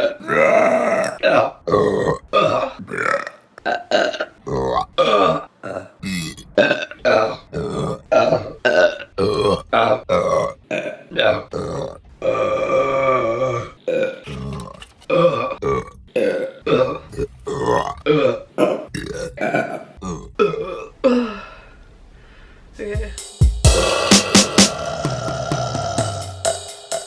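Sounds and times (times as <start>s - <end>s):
women burping: 24.8s - 26.4s.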